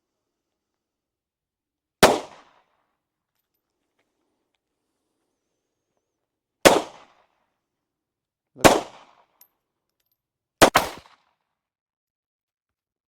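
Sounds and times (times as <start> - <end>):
pistol shots with echo: 2.0 - 2.6, 6.6 - 7.1, 8.6 - 9.2, 10.6 - 11.2.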